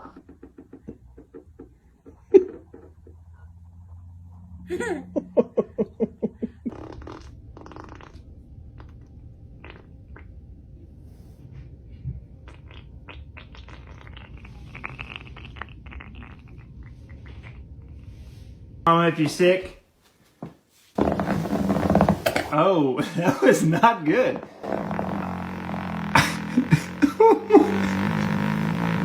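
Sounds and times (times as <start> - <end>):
baby farting: 6.7 - 9.0, 9.6 - 10.3, 12.5 - 16.7, 24.4 - 29.0.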